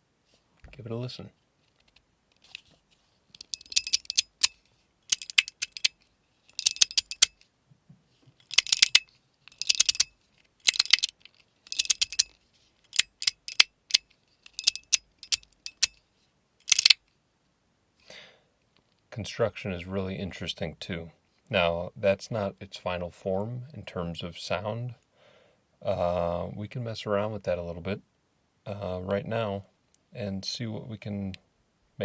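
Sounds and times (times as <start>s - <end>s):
fidget slider clicking: 3.4s - 7.4s, 8.4s - 12.3s, 12.9s - 15.9s, 16.7s - 17.0s.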